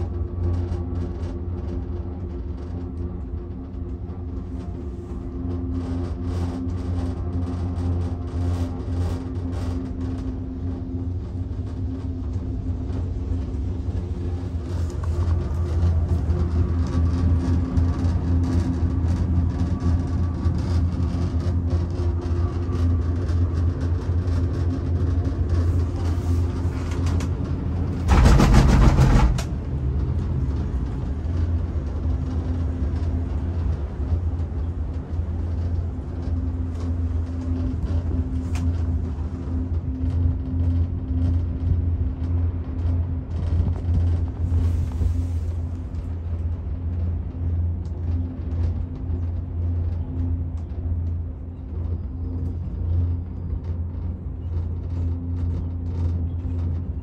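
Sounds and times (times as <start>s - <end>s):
moving vehicle rumble: 0.0s - 57.0s
rushing noise: 24.2s - 31.4s.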